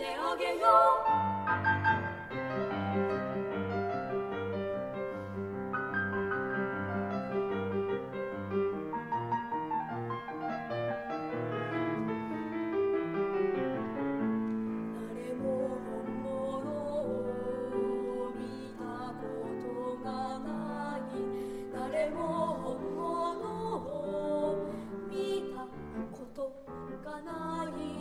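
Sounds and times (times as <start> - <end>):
piano piece: 0.0 - 28.0.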